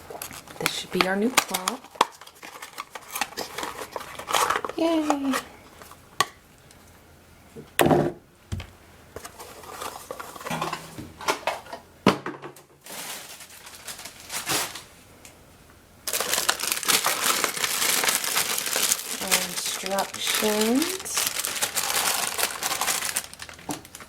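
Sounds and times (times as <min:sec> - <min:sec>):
packaging rustling and crinkling: 0:00.0 - 0:06.0, 0:09.2 - 0:11.8, 0:12.8 - 0:14.9, 0:16.0 - 0:24.0
plastic knocks: 0:07.8 - 0:08.7.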